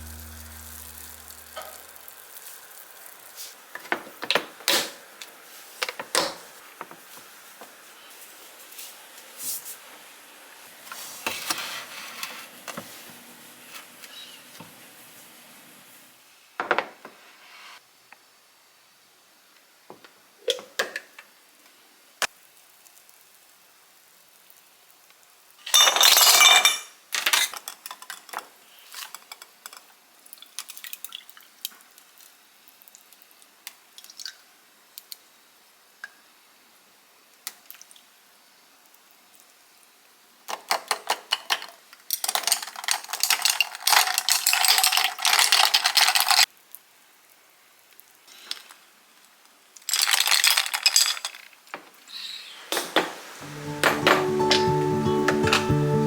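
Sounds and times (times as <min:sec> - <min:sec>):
glass containers and utensils clinking: 0:53.5 - 0:54.8.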